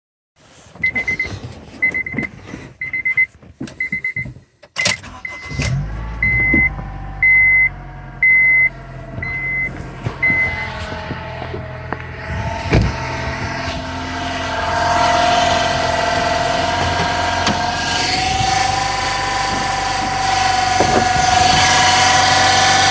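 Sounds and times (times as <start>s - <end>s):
car engine cranking and idling: 0.7s - 22.9s
car warning chime beeping: 0.8s - 10.8s
steady whine: 5.4s - 22.9s.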